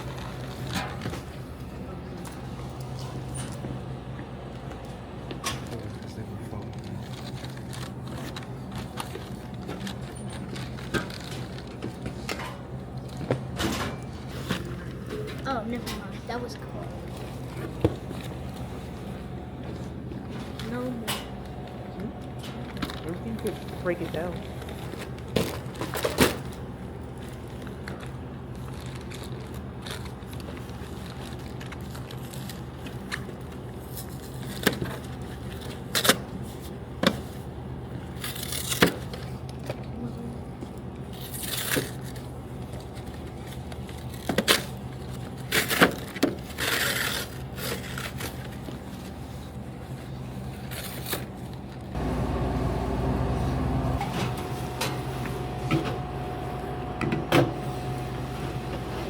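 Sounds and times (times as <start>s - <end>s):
vending machine hum: 0.0s - 59.0s
low rumble with steady tone: 51.9s - 58.8s.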